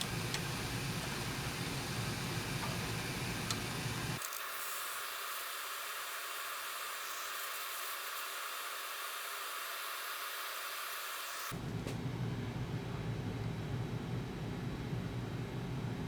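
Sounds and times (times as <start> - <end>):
steady hiss: 0.0 - 11.0.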